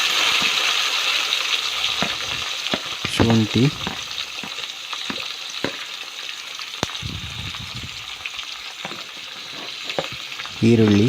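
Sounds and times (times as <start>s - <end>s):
oil sizzling in a pan: 0.0s - 11.0s
spoon tapping and scraping: 8.9s - 10.2s.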